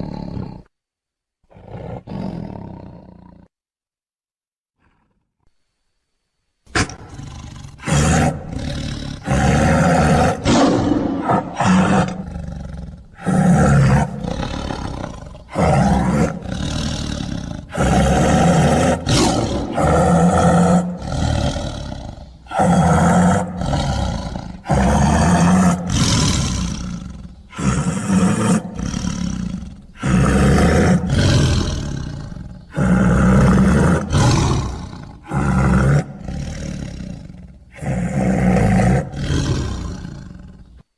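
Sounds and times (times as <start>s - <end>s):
beast-like roaring: 0.0s - 0.7s, 1.5s - 3.5s, 6.8s - 40.8s.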